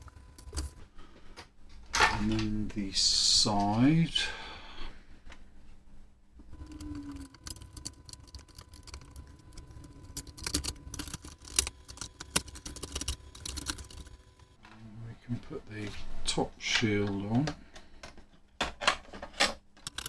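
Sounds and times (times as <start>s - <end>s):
metal case parts clicking and rattling: 1.8s - 2.5s, 6.6s - 14.8s, 16.8s - 20.0s.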